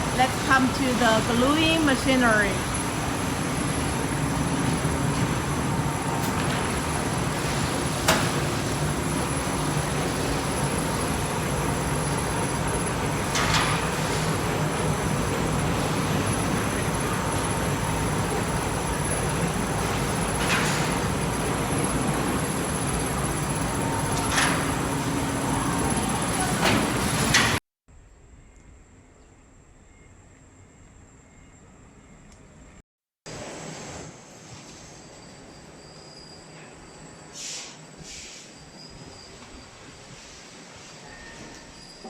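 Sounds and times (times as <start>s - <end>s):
machine humming: 0.0s - 27.4s
short hissing bursts: 37.4s - 38.6s.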